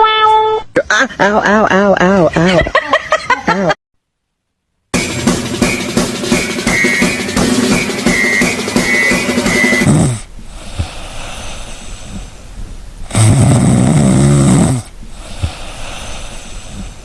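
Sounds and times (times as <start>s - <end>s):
pet snoring loudly: 9.8s - 10.3s, 13.1s - 15.6s
pet breathing quietly: 10.5s - 12.8s, 15.0s - 17.0s.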